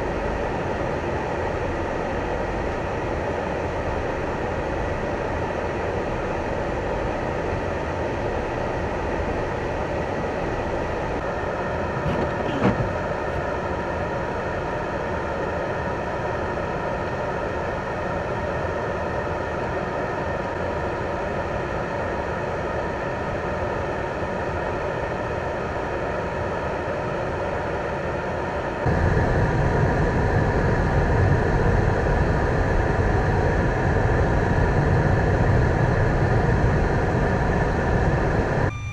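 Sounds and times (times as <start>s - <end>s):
traffic noise: 11.0s - 13.6s
deep rumble: 28.9s - 38.9s.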